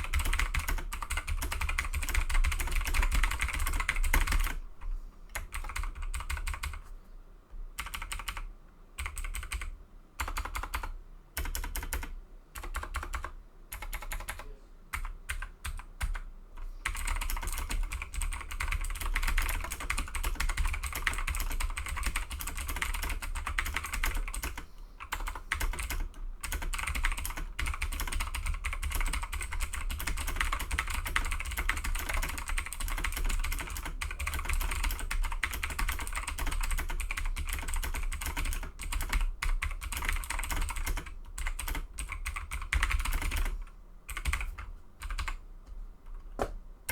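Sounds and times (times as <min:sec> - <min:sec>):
typing on mechanical keyboard: 0:00.0 - 0:04.6, 0:05.3 - 0:06.8, 0:07.8 - 0:16.2, 0:16.8 - 0:45.4.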